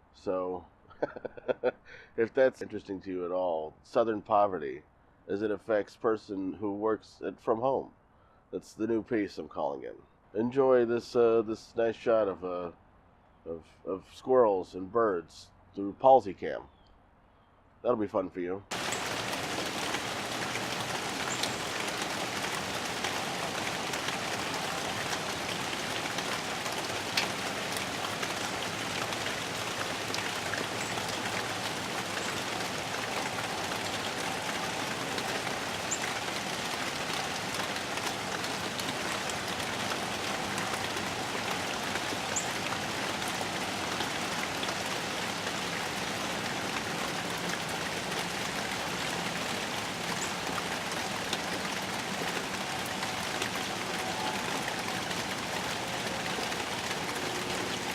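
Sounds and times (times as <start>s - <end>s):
steady rain falling: 0.0s - 2.1s, 18.7s - 57.9s.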